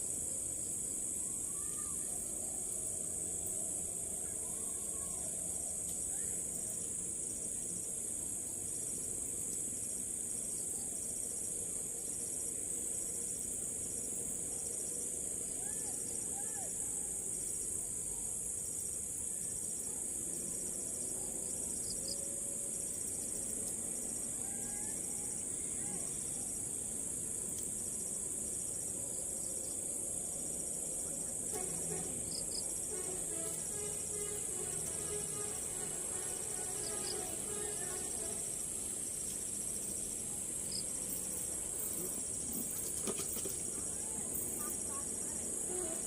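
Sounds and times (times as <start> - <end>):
chorus of crickets: 0.0 - 46.0
insect trilling in pulses: 31.0 - 46.0.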